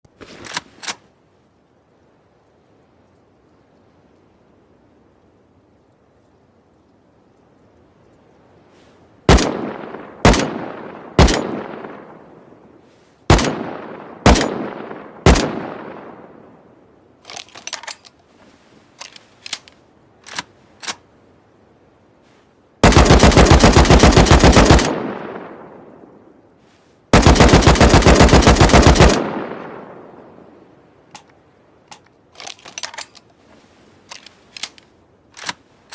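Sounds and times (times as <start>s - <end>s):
rifle single shots echoing: 9.3s - 12.3s, 13.3s - 16.4s, 22.8s - 25.8s, 27.1s - 30.2s
light clicks: 17.2s - 21.0s, 31.1s - 35.9s
rapid-fire gun bursts: 22.8s - 25.0s, 27.2s - 29.4s.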